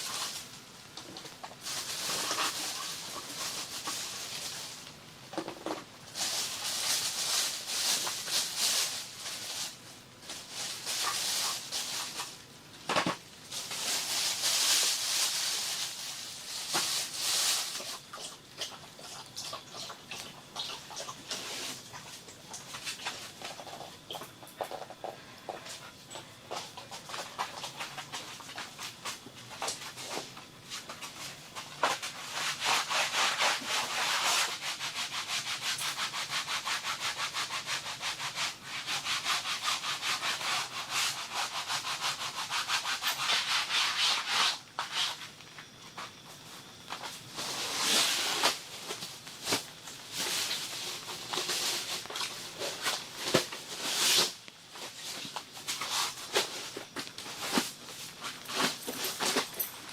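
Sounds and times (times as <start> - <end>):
quiet scattered scratching: 0.0 - 34.9, 40.4 - 59.9
scraping strokes on wood: 26.5 - 45.3.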